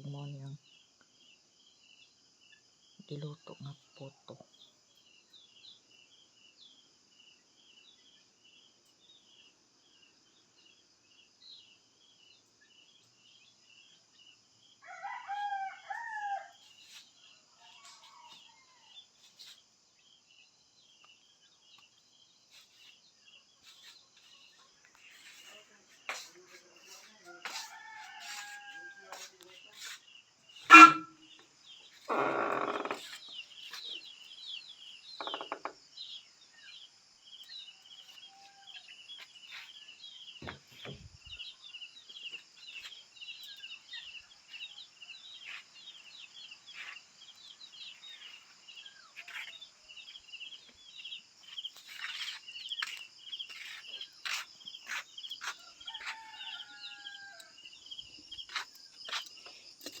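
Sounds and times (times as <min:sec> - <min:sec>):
rooster crowing: 0:14.8 - 0:16.6, 0:27.2 - 0:29.3, 0:30.7 - 0:31.1, 0:55.6 - 0:57.6.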